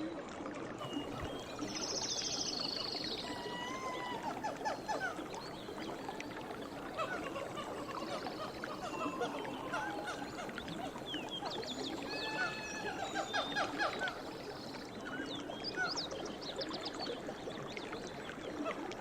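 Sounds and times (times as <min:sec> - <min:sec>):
chatter of animal calls: 0:06.8 - 0:11.0, 0:12.0 - 0:14.2.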